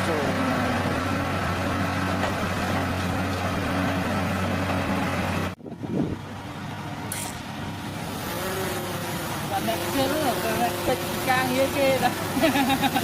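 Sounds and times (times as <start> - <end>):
heavy machinery engine running: 0.0 - 13.0
brief hiss: 7.1 - 7.4.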